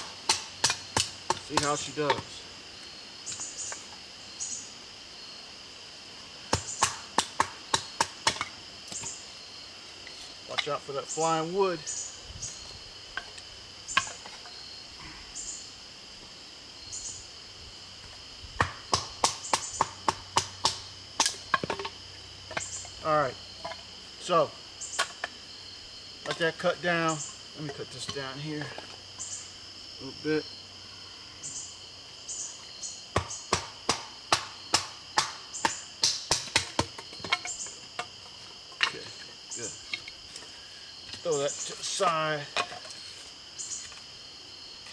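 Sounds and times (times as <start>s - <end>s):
insects chirping: 0.0s - 44.9s
knife chopping into wood: 33.1s - 38.1s.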